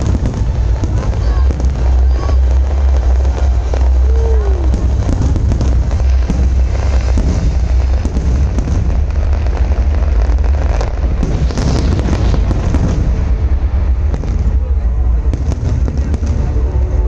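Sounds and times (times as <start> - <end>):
fireworks bangs and crackling: 0.0 - 17.0
heavy low rumble: 0.0 - 17.0.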